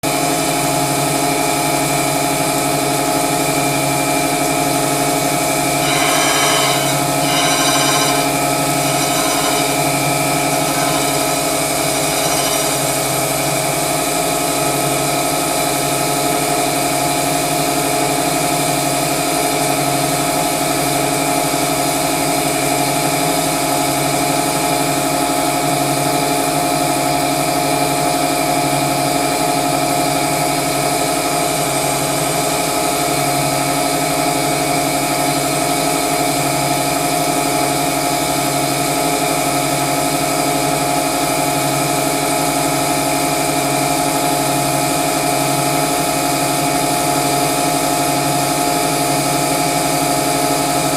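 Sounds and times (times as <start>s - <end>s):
crankshaft grinder humming: 5.5s - 14.0s.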